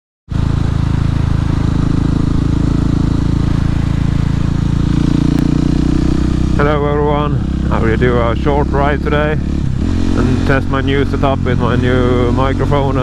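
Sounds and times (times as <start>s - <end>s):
motorcycle engine running steadily: 0.3s - 13.0s.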